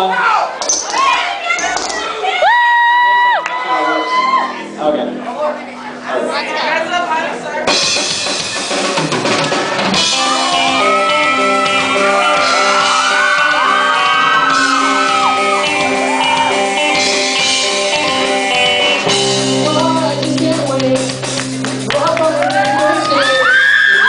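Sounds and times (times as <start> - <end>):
voices shouting and whooping: 2.2 - 4.8, 10.0 - 16.9, 22.3 - 24.0
live band playing loud music: 7.6 - 24.0.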